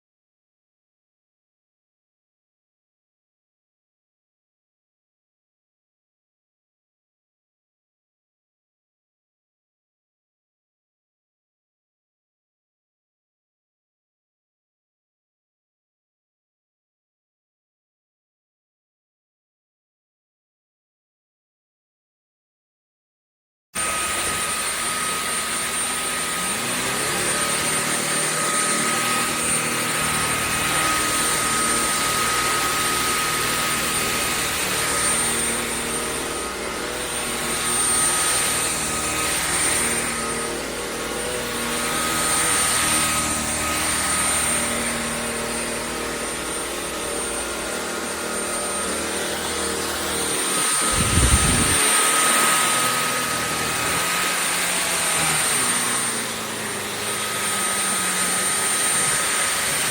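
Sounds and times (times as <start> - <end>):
stick vacuum running: 23.8 - 59.9.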